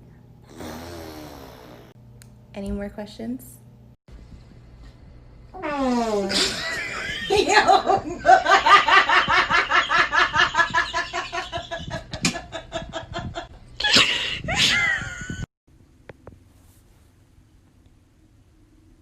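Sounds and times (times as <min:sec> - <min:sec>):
woman laughing: 0:06.2 - 0:15.5.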